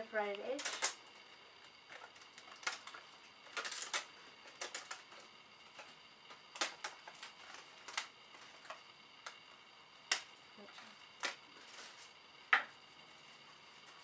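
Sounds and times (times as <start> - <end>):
thin plastic crackling and snapping: 0.3 - 1.0, 1.9 - 9.4.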